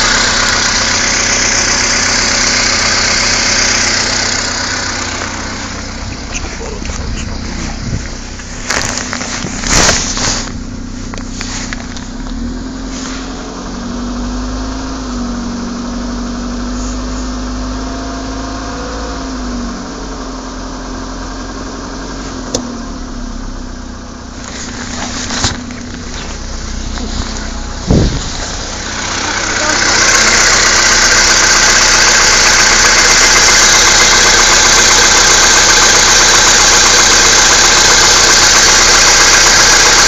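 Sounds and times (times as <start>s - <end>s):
engine knocking: 0.0s - 12.8s, 16.7s - 40.0s
car engine running: 0.0s - 40.0s.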